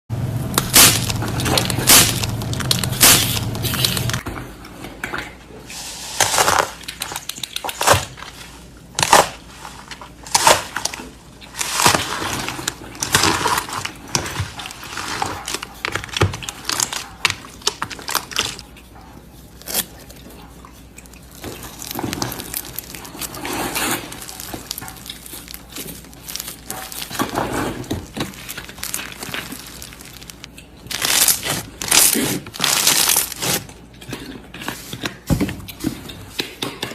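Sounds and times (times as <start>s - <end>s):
slime squeezed by hand: 21.3s - 33.6s.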